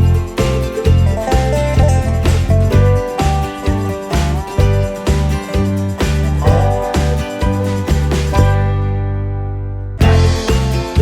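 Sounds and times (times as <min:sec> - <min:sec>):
bluegrass music with banjo: 0:00.0 - 0:09.2, 0:10.0 - 0:11.0.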